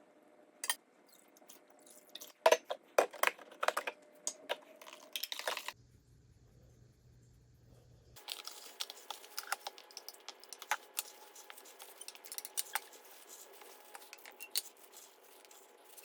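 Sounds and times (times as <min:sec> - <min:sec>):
small clicks and crackles: 0:08.2 - 0:16.0.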